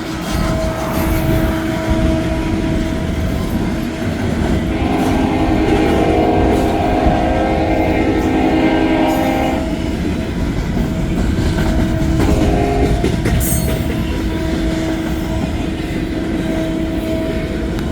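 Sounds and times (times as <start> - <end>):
train rumbling: 0.0 - 17.9
locomotive horn chord: 0.6 - 10.1, 12.2 - 13.2.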